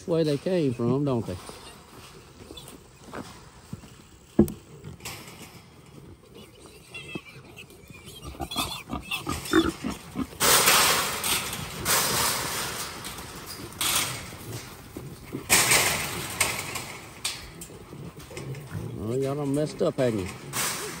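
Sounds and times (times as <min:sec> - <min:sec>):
hogs grunting: 0:04.6 - 0:21.0
hogs squealing: 0:06.2 - 0:10.7.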